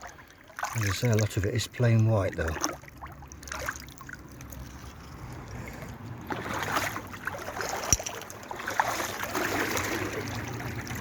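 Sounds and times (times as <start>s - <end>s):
boots wading through water: 0.0s - 11.0s.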